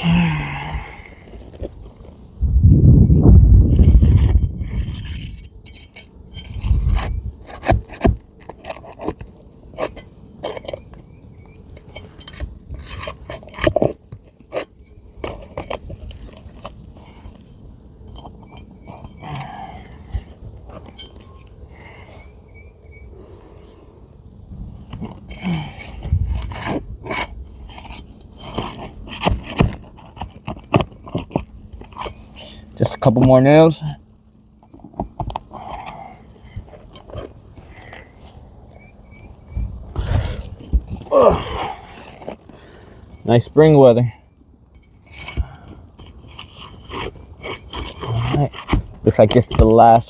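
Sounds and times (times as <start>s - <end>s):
metal tool scraping shingles: 3.6s - 11.0s, 11.6s - 22.1s, 24.8s - 34.0s, 44.7s - 50.0s
sharp clicks and knocks: 5.1s - 11.0s, 26.0s - 32.2s.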